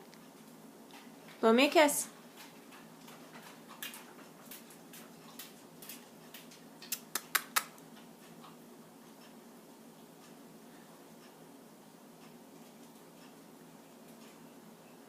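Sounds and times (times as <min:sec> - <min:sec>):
parrot clicking: 0:05.3 - 0:07.8.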